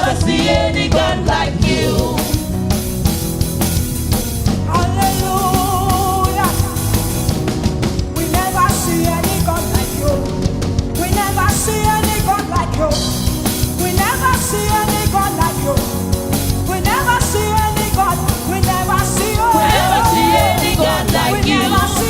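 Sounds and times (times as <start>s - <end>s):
band music with drum kit: 0.0s - 22.0s
person singing: 4.7s - 6.9s, 16.7s - 22.0s.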